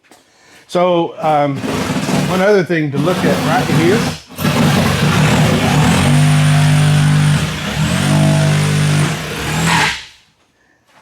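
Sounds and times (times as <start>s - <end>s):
power tool motor whine: 3.0s - 10.1s.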